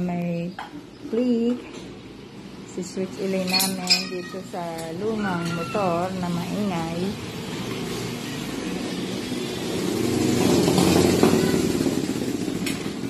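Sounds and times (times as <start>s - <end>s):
water pump motor running: 6.0s - 13.0s.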